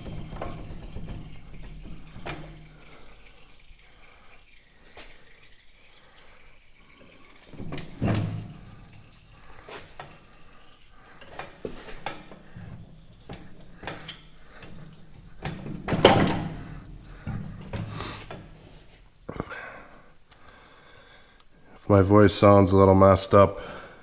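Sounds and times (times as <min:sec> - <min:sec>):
heavy metal clunks: 0:00.0 - 0:02.7, 0:15.4 - 0:17.9
metal parts clanking: 0:15.4 - 0:16.7.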